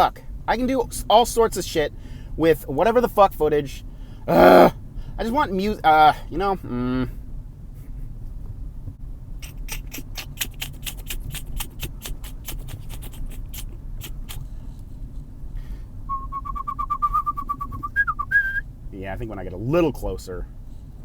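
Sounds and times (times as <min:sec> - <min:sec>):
man whistling trilled note: 0:16.1 - 0:18.6.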